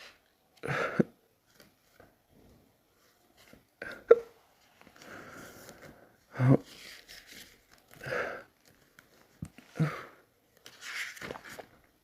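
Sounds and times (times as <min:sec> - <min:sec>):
person hiccupping: 0:03.8 - 0:04.4
breathing: 0:05.0 - 0:06.3.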